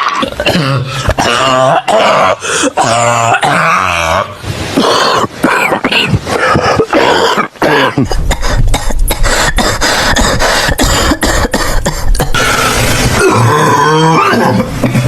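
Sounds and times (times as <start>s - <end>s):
person coughing theatrically: 0.2s - 3.6s, 4.8s - 12.4s.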